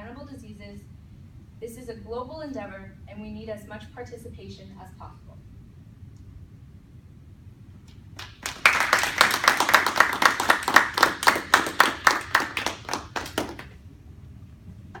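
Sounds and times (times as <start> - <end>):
small audience clapping: 7.9 - 13.8.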